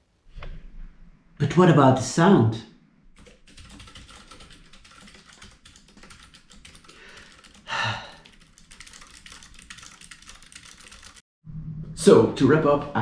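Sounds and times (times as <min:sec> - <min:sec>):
mechanical keyboard typing: 0:03.2 - 0:11.2.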